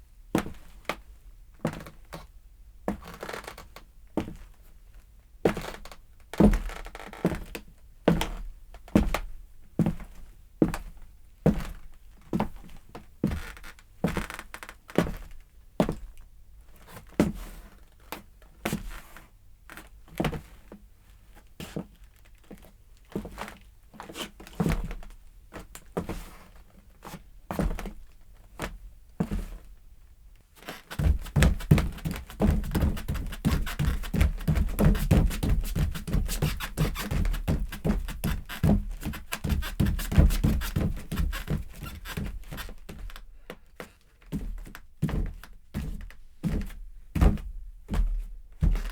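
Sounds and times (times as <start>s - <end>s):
footsteps indoors: 30.6s - 48.9s.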